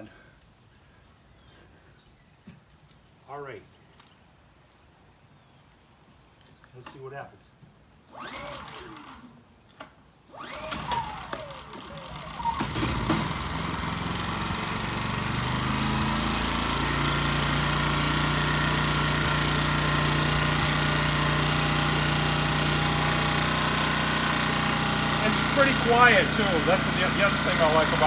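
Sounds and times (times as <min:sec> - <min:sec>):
recoil cord pull: 0:08.2 - 0:13.3
generator engine idling: 0:10.8 - 0:28.0.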